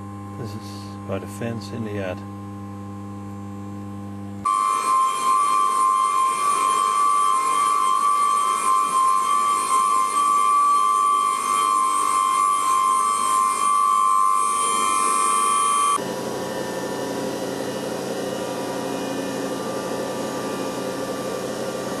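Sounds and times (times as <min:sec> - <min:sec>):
low electrical hum: 0:00.0 - 0:04.5
high electrical whine: 0:00.0 - 0:22.0.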